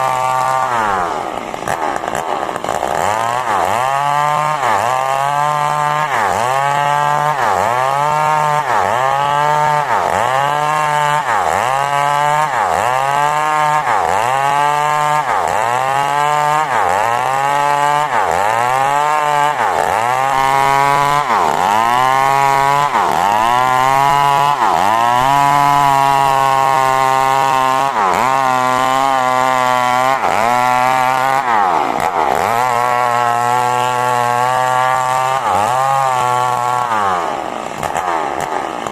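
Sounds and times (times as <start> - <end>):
chainsaw cutting wood: 0.0 - 38.9.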